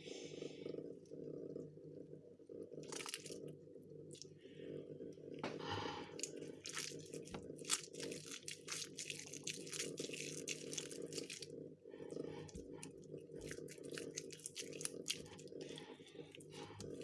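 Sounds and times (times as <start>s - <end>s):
steady low hum: 0.0s - 17.0s
slime squelching by hand: 2.8s - 3.5s, 5.7s - 17.0s.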